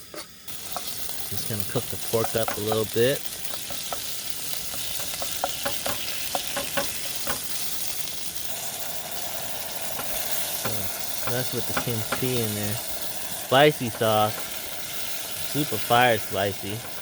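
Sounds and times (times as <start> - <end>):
pork sizzling in a pan: 0.0 - 17.0
utensil clicking against pan: 0.7 - 7.8, 9.9 - 13.1, 15.5 - 17.0.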